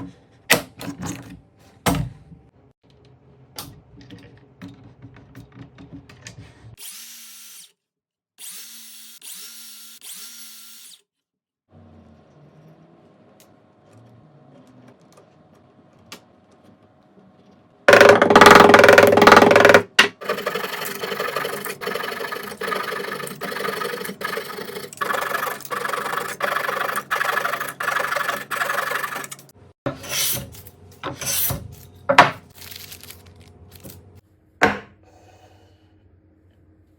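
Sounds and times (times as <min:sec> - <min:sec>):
wood being rasped by hand: 0:20.3 - 0:29.4.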